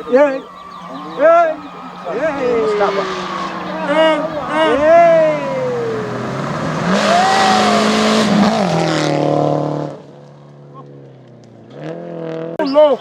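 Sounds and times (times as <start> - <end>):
tyres on gravel rushing: 0.0 - 9.2
rally car engine revving: 0.0 - 13.0.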